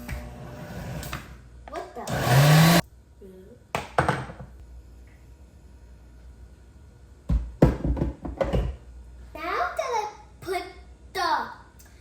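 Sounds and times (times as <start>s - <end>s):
blender motor whirring: 2.0s - 2.8s.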